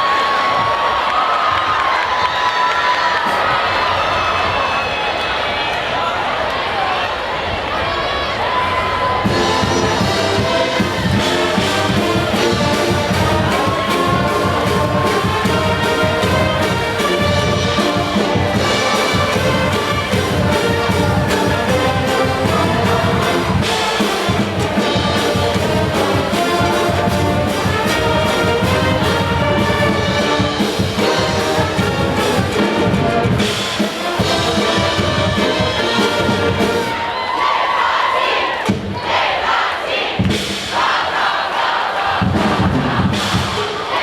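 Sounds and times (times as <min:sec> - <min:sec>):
brass band playing: 0:09.2 - 0:37.2.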